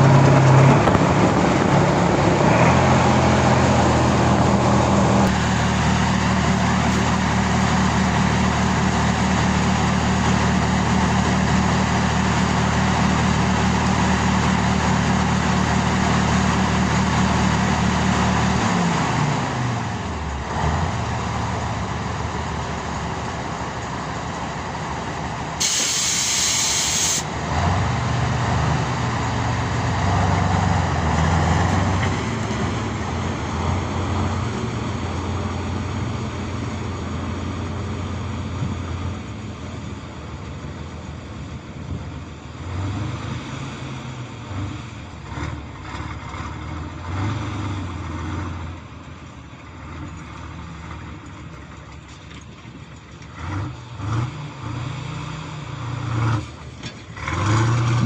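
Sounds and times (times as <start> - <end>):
tractor diesel engine running: 0.0 - 58.0
hiss of released air: 25.6 - 27.3.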